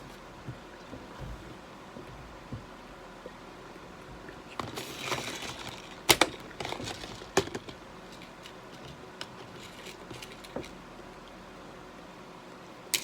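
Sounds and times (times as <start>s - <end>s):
fishing tackle rustling: 4.6s - 10.8s.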